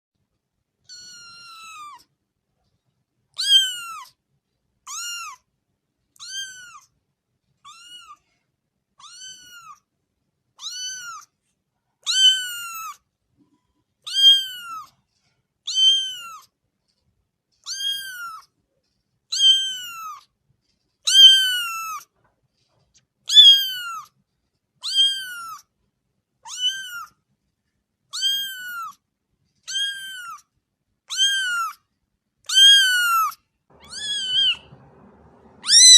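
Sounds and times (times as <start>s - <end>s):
kitten meowing: 0.8s - 2.1s, 3.4s - 4.2s, 4.8s - 5.5s, 6.1s - 6.9s, 7.6s - 8.3s, 9.0s - 9.8s, 10.6s - 11.3s, 12.0s - 13.0s, 14.0s - 14.9s, 15.7s - 16.5s, 17.6s - 18.5s, 19.3s - 20.2s, 21.1s - 22.0s, 23.3s - 24.1s, 24.8s - 25.7s, 26.4s - 27.2s, 28.1s - 29.0s, 29.6s - 30.5s, 31.1s - 31.8s, 32.4s - 34.8s, 35.6s - 35.9s.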